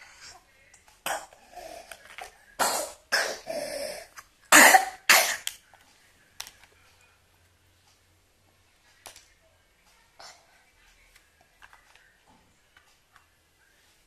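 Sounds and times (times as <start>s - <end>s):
person coughing harshly: 2.6s - 5.5s.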